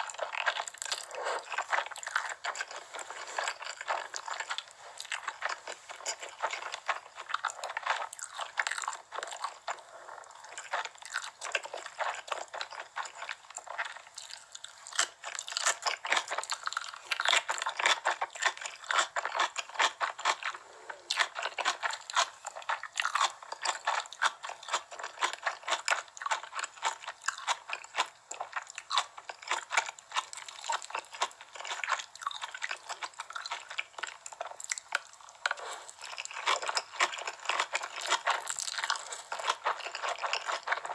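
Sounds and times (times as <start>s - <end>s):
crunchy chewing of fried chicken: 0.0s - 40.9s.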